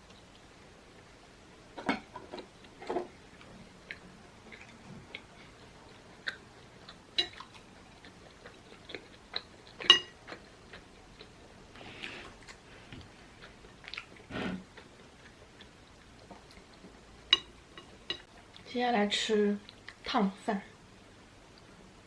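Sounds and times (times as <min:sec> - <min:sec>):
person chewing: 0:02.4 - 0:18.7.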